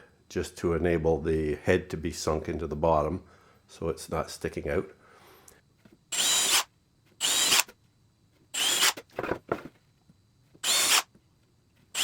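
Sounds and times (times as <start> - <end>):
power drill boring into wood: 6.1 - 7.7, 8.6 - 9.0, 10.6 - 11.1.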